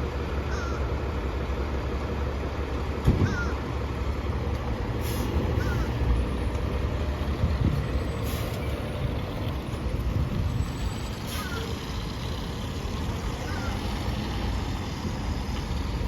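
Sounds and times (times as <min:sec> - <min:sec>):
diesel engine running: 0:00.0 - 0:16.0
short air hisses: 0:05.0 - 0:05.4.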